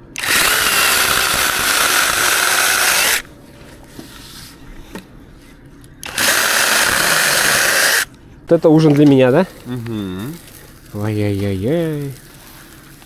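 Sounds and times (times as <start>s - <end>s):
electric air pump running: 0.0s - 3.3s, 6.0s - 8.1s, 9.2s - 13.0s.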